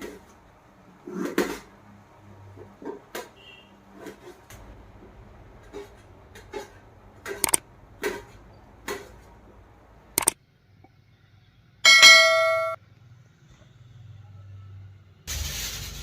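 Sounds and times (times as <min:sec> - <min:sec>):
metal vessel clang ringing: 0:11.9 - 0:12.8.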